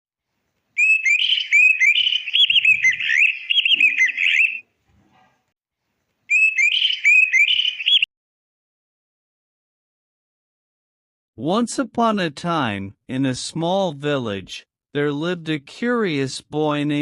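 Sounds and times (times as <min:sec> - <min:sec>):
small birds chirping: 0:00.8 - 0:04.7, 0:06.3 - 0:08.1.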